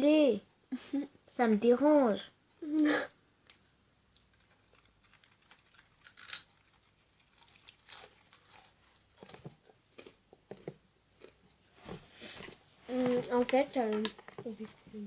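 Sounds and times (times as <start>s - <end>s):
faint crunching of crisp food: 3.5s - 14.8s.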